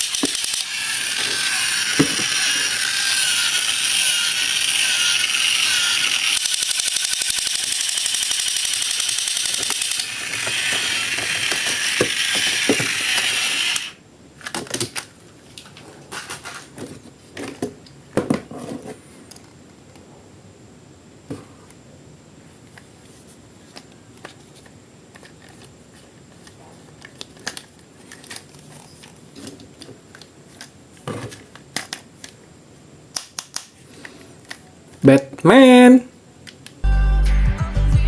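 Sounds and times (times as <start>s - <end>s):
geared mechanism ratcheting rattle: 0.0s - 14.0s.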